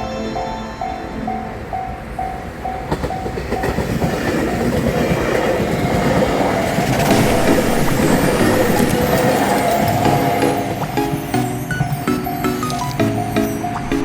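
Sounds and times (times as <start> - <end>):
train wheels clacking on rails: 1.7 - 14.0
level crossing bell ringing: 7.1 - 14.0.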